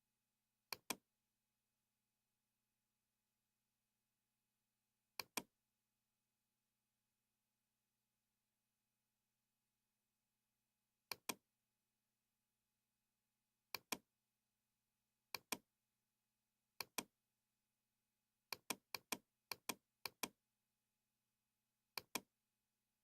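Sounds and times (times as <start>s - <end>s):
computer mouse clicking: 0.7s - 1.0s, 5.2s - 5.5s, 11.1s - 11.4s, 13.7s - 14.0s, 15.3s - 15.6s, 16.8s - 17.1s, 18.5s - 20.4s, 22.0s - 22.3s.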